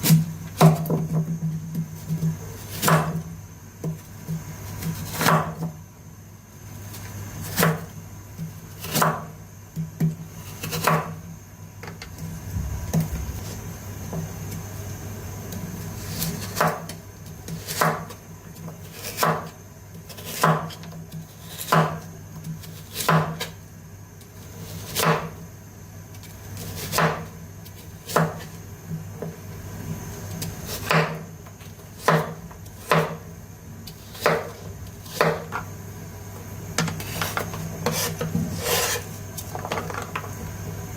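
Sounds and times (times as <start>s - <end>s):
knife chopping on wooden board: 0.0s - 1.3s, 2.7s - 3.2s, 5.0s - 5.7s, 8.8s - 9.3s, 10.0s - 11.2s, 16.5s - 18.1s, 19.1s - 19.5s, 20.2s - 20.9s, 21.6s - 22.0s, 22.9s - 23.5s, 24.9s - 25.3s, 26.8s - 27.3s, 28.1s - 28.4s, 30.8s - 31.2s, 32.0s - 33.2s, 34.1s - 35.6s
low steady hum: 11.2s - 17.6s.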